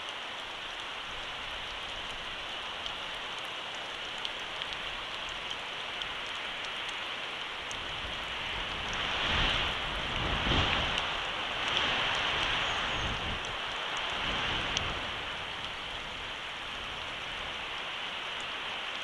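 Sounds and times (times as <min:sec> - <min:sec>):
steady rain: 0:00.0 - 0:19.0
wind gusts on microphone: 0:07.7 - 0:17.7.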